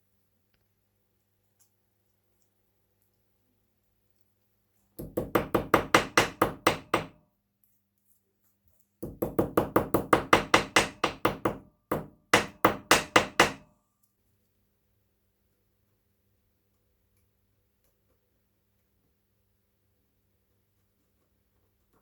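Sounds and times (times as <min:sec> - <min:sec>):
hammer taps: 0:05.0 - 0:07.2, 0:09.0 - 0:13.7.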